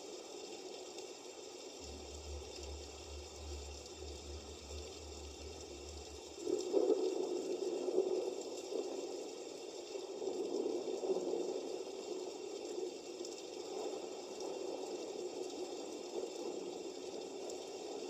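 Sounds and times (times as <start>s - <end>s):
running water from speaker: 1.5s - 16.4s.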